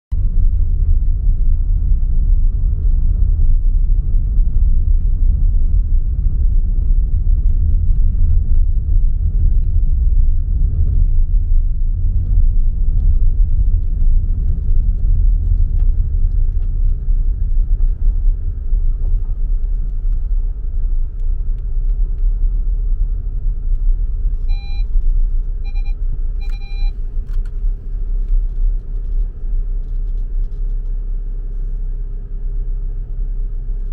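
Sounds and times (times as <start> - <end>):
diesel engine rumbling: 0.1 - 33.9
short electronic beeps: 24.4 - 24.9, 25.6 - 27.0.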